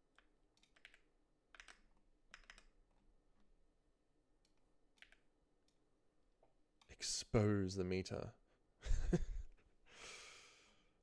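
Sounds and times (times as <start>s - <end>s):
computer keyboard typing: 0.2s - 2.8s.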